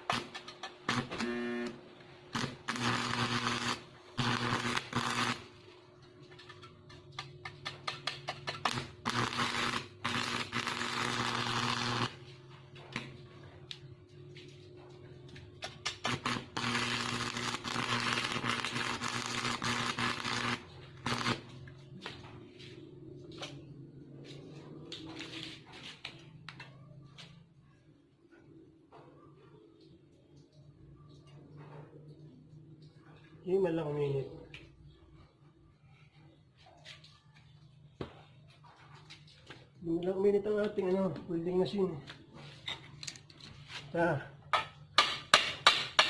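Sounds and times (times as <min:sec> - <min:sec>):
welding arc crackling: 0:00.0 - 0:01.7, 0:02.3 - 0:05.6, 0:07.2 - 0:12.3, 0:15.6 - 0:21.6
welding rod scratching: 0:02.4 - 0:05.5, 0:06.2 - 0:12.3, 0:15.6 - 0:21.5.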